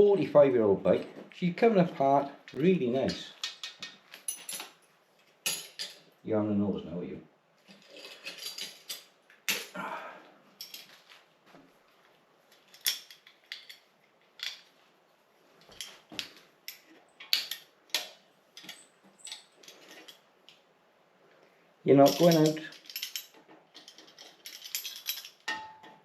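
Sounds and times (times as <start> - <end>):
metallic clinks of tools and bicycle parts: 2.5 - 6.0, 7.7 - 9.8, 10.6 - 11.1, 15.6 - 20.6, 22.0 - 26.0.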